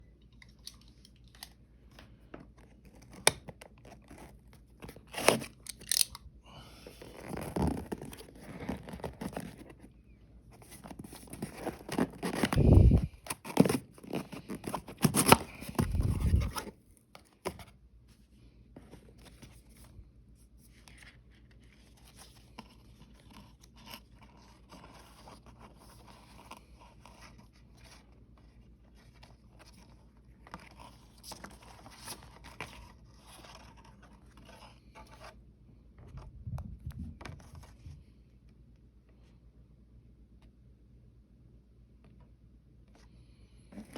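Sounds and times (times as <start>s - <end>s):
packaging tearing and crinkling: 4.9s - 6.2s
packaging rustling: 7.0s - 9.9s, 10.6s - 16.8s.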